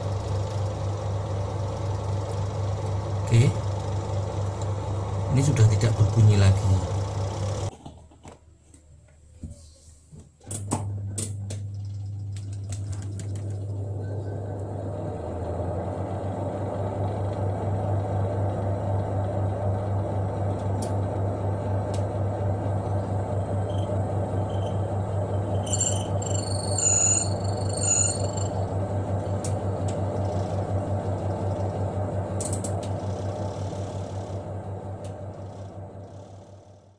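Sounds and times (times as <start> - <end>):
spin dryer humming: 0.0 - 7.7, 10.6 - 36.9
washing machine clicks: 32.4 - 34.4.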